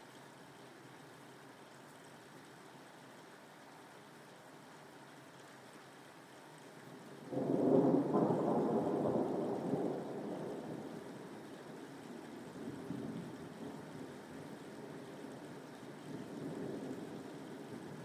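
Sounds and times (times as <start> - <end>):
thunder rumbling: 7.3 - 11.3.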